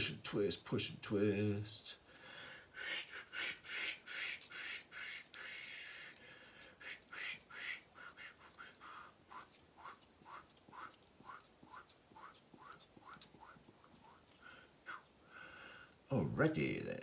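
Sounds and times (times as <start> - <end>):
plastic parts squeaking and rubbing: 6.9 - 15.1.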